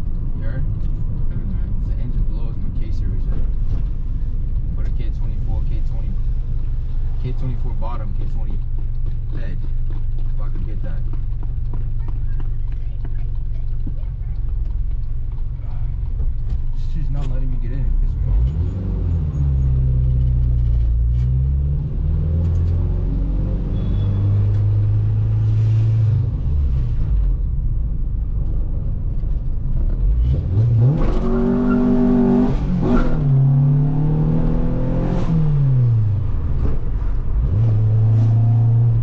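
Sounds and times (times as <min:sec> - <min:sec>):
car engine revving: 0:13.6 - 0:27.6, 0:29.6 - 0:39.0.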